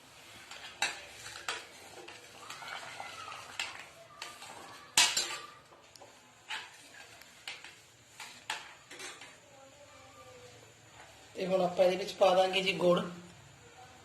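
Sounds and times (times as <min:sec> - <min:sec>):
spoon scraping: 0:00.3 - 0:05.6, 0:06.4 - 0:09.3
utensils clinking against a pot: 0:00.4 - 0:09.4.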